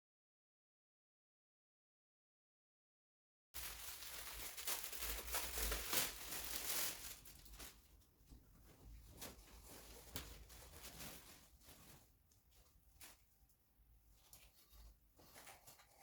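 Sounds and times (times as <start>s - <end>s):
rustling and light knocks: 7.6s - 13.3s.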